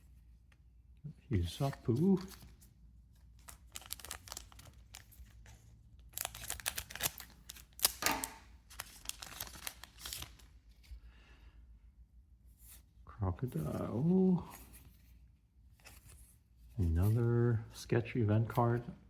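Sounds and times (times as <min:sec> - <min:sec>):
foil wrapper crinkling: 0:03.4 - 0:05.4, 0:06.0 - 0:10.6
cards flipping and clicking: 0:03.4 - 0:10.9.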